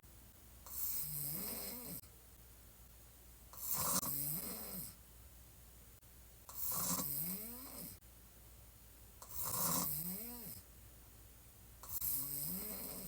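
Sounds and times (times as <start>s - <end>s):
woman snoring: 0.7s - 2.1s, 3.6s - 5.0s, 6.5s - 8.0s, 9.3s - 10.6s, 11.9s - 13.0s.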